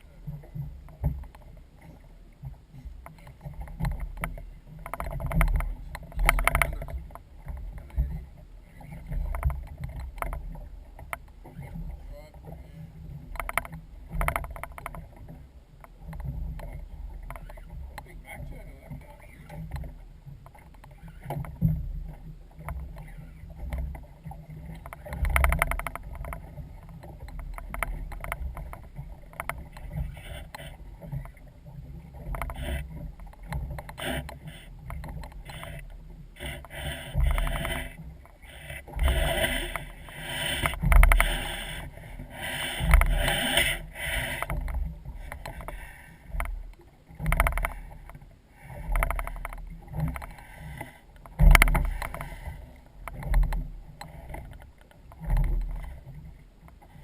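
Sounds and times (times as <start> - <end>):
water sloshing against boat: 0.0 - 57.0.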